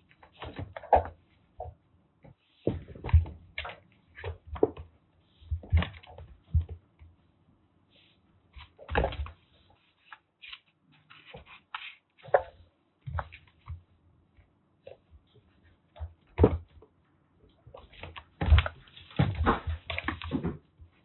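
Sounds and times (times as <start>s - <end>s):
kittens thumping and scuffling: 0.0s - 7.1s, 8.5s - 9.9s, 17.7s - 21.0s.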